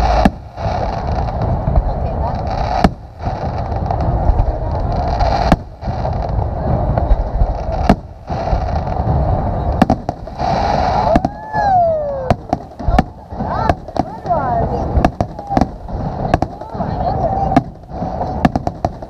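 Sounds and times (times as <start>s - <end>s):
fireworks bangs: 0.0s - 19.0s
fireworks rumble and crackle: 0.0s - 19.0s
falling firework whistle: 10.3s - 12.6s.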